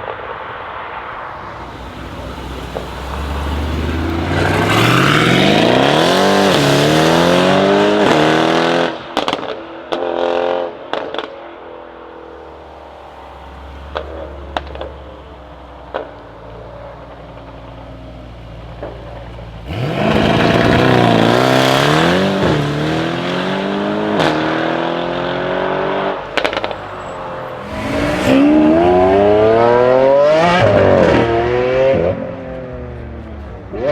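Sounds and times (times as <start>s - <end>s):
exhaust crackles: 1.1s - 8.2s, 13.0s - 24.4s
car engine revving and accelerating: 1.5s - 11.3s, 19.6s - 32.9s.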